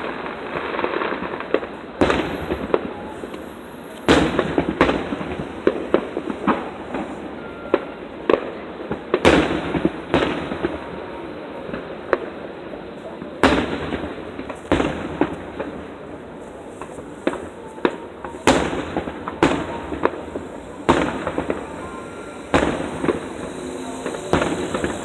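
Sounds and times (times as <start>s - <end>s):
fireworks loud bangs: 0.0s - 25.0s
steady background hiss: 0.0s - 25.0s
crackling pops: 13.4s - 25.0s.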